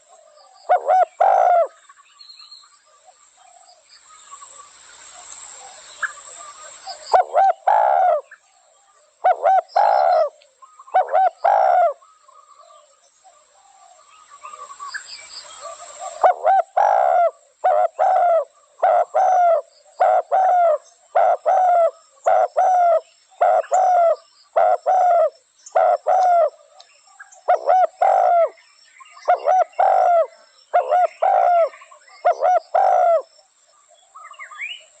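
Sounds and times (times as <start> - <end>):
dove cooing: 0.0 - 1.8, 6.4 - 8.4, 9.2 - 12.8, 15.6 - 26.8, 27.4 - 28.6, 29.2 - 33.3.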